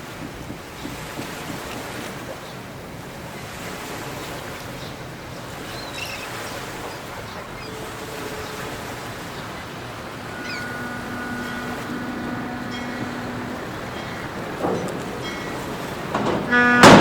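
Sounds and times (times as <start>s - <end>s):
wind noise on microphone: 0.0s - 4.2s
water and waves: 0.0s - 17.0s.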